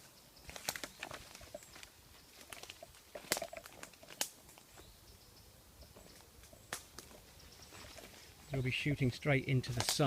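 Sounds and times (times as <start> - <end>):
footsteps through undergrowth: 0.0 - 5.0, 6.0 - 8.7
twig snaps: 0.5 - 1.2, 2.5 - 4.7, 6.4 - 7.2.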